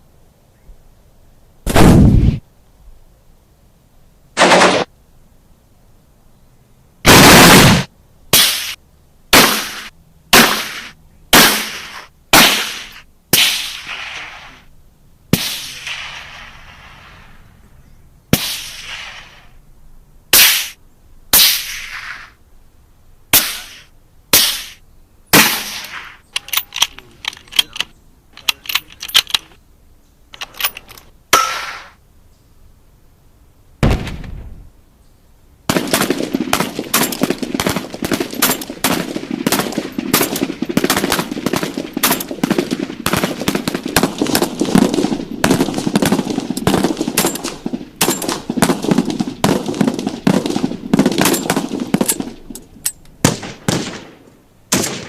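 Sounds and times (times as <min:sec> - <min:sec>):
heavy deep gunshot: 0:01.7 - 0:02.4, 0:07.1 - 0:14.4, 0:25.3 - 0:26.1, 0:33.8 - 0:34.7, 0:35.7 - 0:52.3, 0:53.2 - 0:55.0
single gunshots echoing: 0:01.7 - 0:02.4, 0:07.1 - 0:14.5, 0:23.4 - 0:26.2, 0:33.8 - 0:34.6, 0:53.2 - 0:55.0
rapid automatic gunfire: 0:04.4 - 0:04.9, 0:35.7 - 0:52.3.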